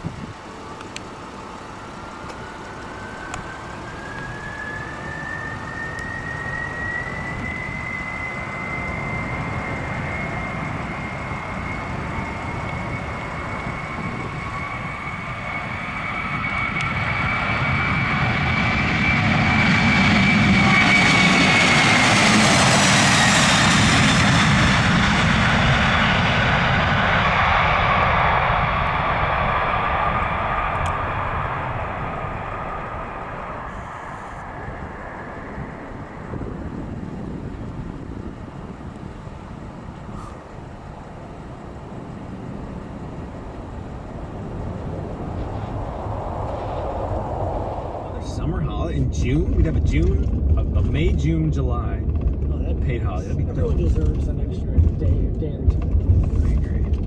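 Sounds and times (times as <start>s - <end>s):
jet engines passing close: 0.0s - 57.0s.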